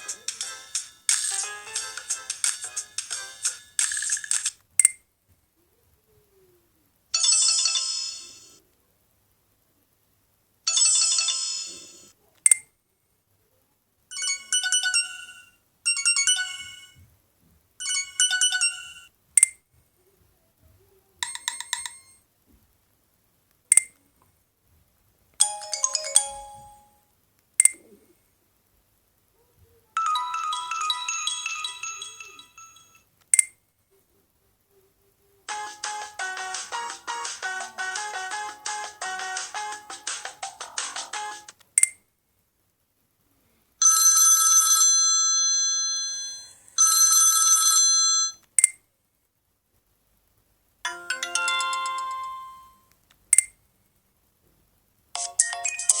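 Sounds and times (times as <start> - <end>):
phone ringtone melodies: 0.0 - 4.2, 14.1 - 17.0, 17.8 - 19.1, 25.4 - 27.0, 30.0 - 33.0, 35.5 - 41.5, 50.9 - 52.8, 55.2 - 56.0.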